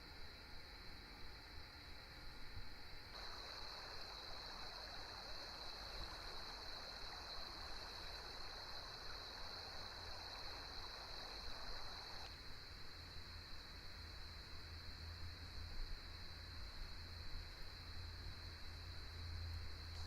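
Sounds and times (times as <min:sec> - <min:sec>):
earbud noise-masking rushing sound: 0:03.2 - 0:12.3.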